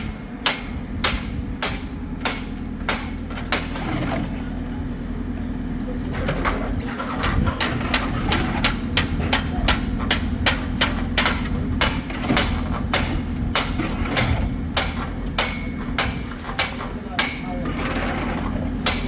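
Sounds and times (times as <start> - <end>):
hammer knocking on formwork: 0.0 - 3.8, 7.2 - 17.6
low engine running: 0.0 - 19.0.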